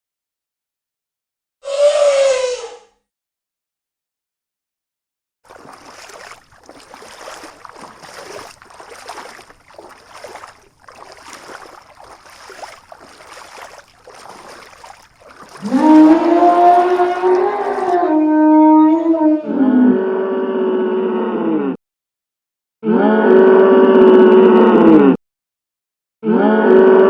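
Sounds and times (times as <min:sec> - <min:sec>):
elephant bellowing: 0:15.6 - 0:18.2.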